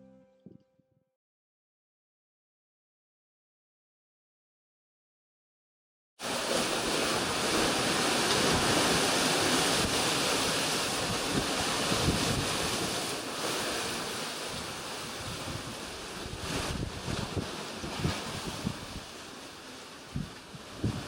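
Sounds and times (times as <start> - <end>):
sea water and waves rushing: 6.2 - 21.0
wind buffeting microphone: 7.4 - 13.1, 14.5 - 21.0.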